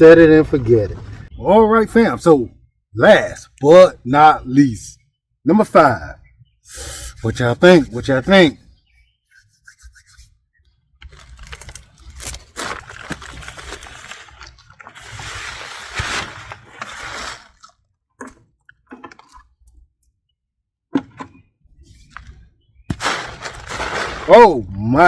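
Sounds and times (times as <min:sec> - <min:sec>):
soil crunching and rustling: 0:11.0 - 0:19.7, 0:21.8 - 0:25.0.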